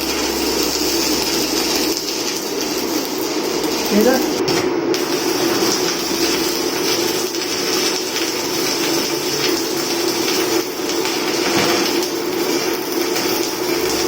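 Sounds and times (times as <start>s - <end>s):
low steady hum: 0.0s - 8.6s
welding arc sizzling hiss: 0.0s - 14.0s.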